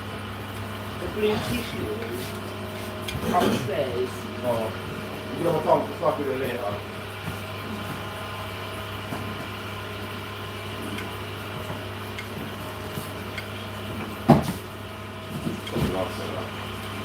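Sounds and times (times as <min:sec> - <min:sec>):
dishwasher humming: 0:00.0 - 0:17.0.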